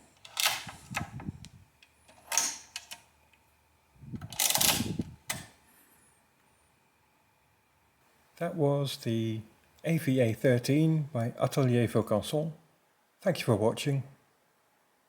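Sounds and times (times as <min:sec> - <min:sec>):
calculator mechanical clicks: 0:04.2 - 0:05.6.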